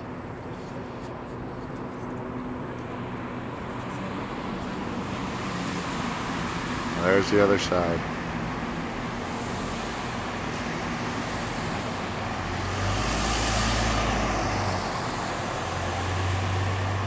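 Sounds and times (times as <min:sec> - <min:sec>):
road traffic noise: 0:00.0 - 0:17.0
vehicle passing by: 0:03.4 - 0:17.0.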